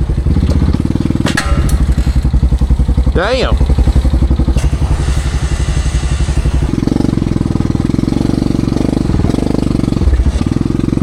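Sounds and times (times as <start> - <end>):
atv engine revving: 0.0 - 11.0.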